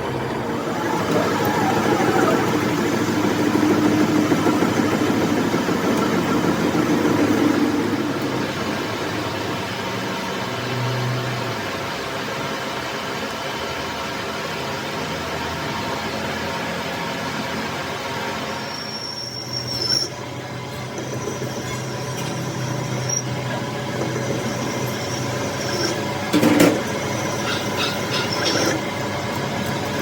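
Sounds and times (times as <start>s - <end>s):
metalworking machine running: 0.0s - 11.6s, 14.8s - 30.0s
high metal squeal: 18.6s - 30.0s.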